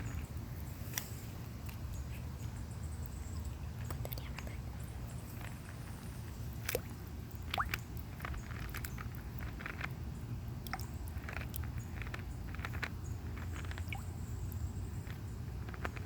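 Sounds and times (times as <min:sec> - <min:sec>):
pool water dripping and lapping: 0:00.0 - 0:15.9.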